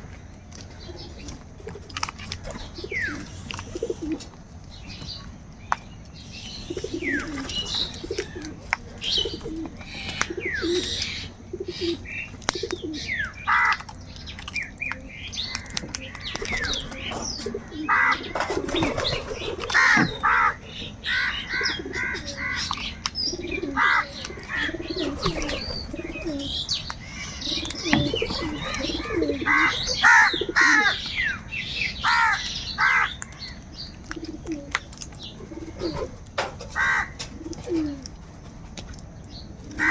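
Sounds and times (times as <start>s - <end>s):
low cooing calls: 0.0s - 5.4s, 6.0s - 39.9s
small birds chirping: 0.0s - 39.9s
crows cawing: 6.8s - 14.0s, 15.4s - 33.6s, 36.6s - 38.0s, 39.7s - 39.9s.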